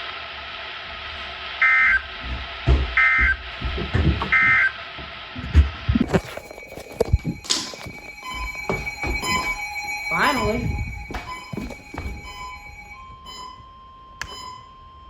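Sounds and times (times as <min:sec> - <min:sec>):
low thumps: 0:05.6 - 0:13.0.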